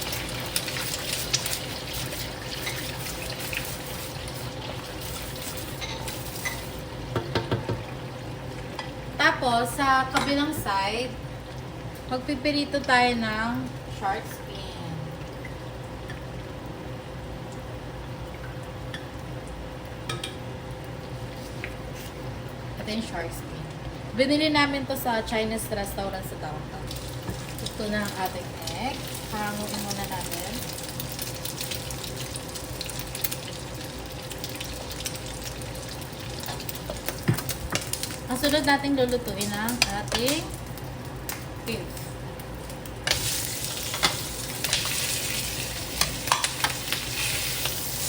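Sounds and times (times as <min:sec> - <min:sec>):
egg sizzling in oil: 0:00.0 - 0:09.2, 0:26.8 - 0:48.0.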